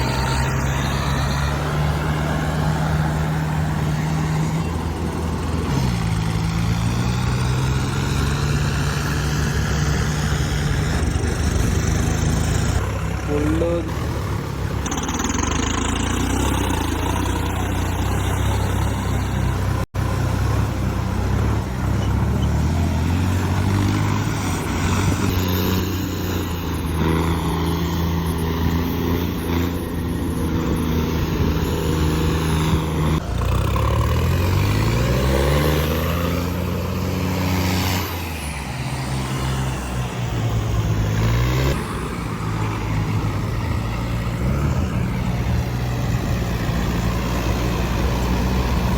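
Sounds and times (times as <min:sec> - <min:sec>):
diesel engine running: 0:00.0 - 0:48.9.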